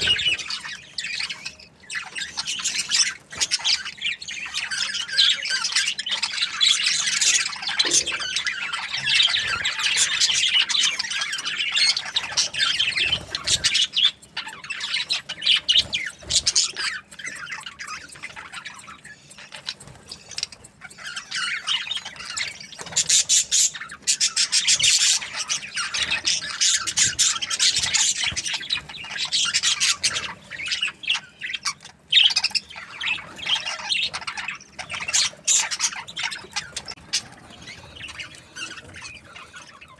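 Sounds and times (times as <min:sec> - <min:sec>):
budgerigars chattering: 0:00.0 - 0:39.9.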